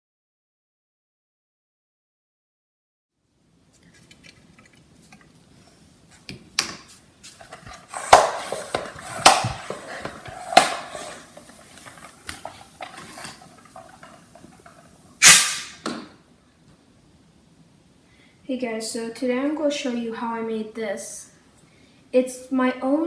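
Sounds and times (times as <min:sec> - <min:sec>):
hard objects clattering: 0:07.4 - 0:15.4.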